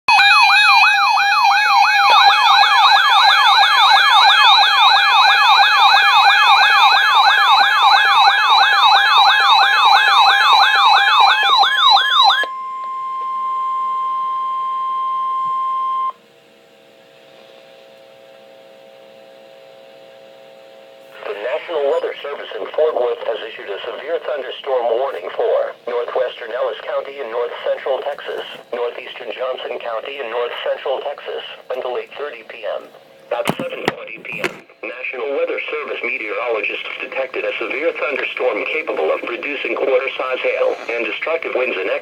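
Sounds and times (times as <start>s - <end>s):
steady high alarm tone: 0.1s - 16.2s, 34.8s - 42.0s
warbling alert siren: 0.1s - 16.2s, 35.7s - 42.0s
faint steady hum: 9.9s - 42.0s.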